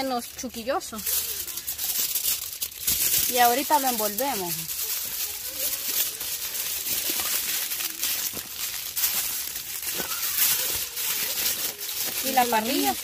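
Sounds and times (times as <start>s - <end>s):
aluminium foil crinkling: 0.0s - 13.0s.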